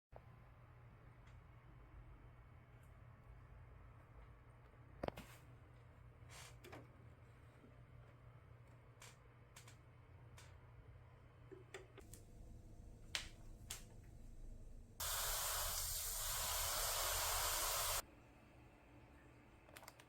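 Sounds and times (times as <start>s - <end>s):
steady hiss: 15.0s - 18.0s.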